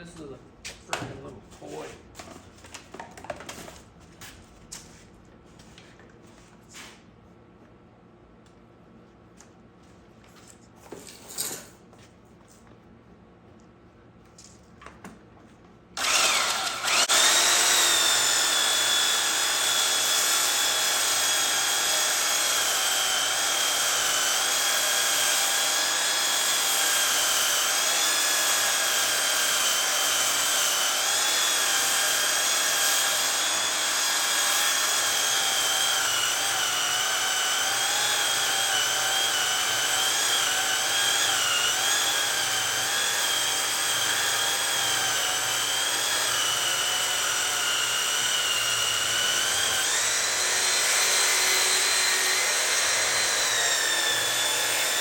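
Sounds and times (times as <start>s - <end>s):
electric sander whining: 16.0s - 55.0s.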